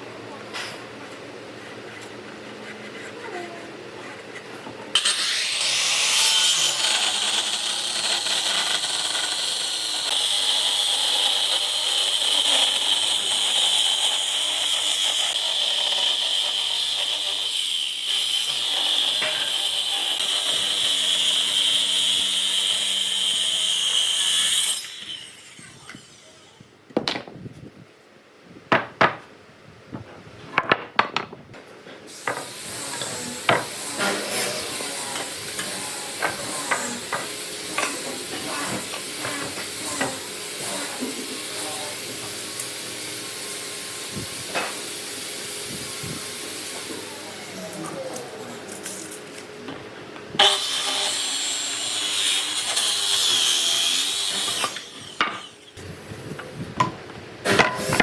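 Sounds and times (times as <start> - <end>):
power tool cutting wood: 5.0 - 26.5, 32.1 - 49.2, 50.4 - 55.9
knocks of wood being handled: 26.9 - 27.4, 28.7 - 29.3, 29.9 - 31.7.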